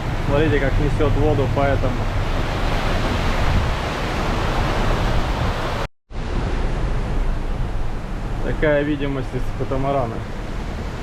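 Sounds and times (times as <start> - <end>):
strong wind rushing: 0.0 - 8.7
wind-driven rain and spray: 0.0 - 11.0.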